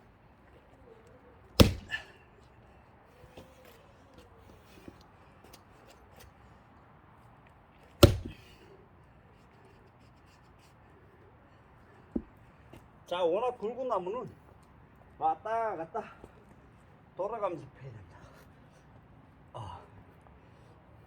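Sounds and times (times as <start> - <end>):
axe splitting wood: 1.6 - 2.1, 8.0 - 8.6.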